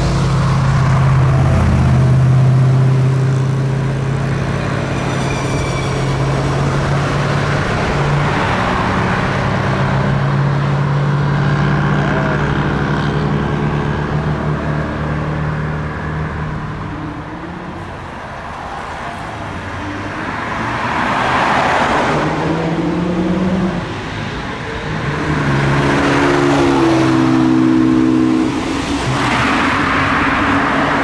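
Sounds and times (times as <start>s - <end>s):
car engines accelerating past: 20.0s - 31.0s.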